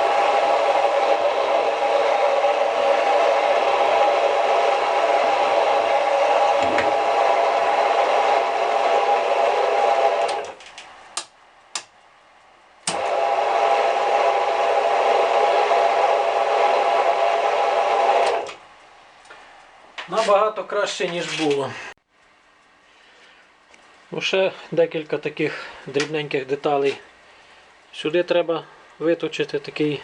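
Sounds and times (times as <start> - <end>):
drill press motor humming: 0.0 - 10.8, 12.8 - 18.6
sharp clicks: 10.3 - 13.0.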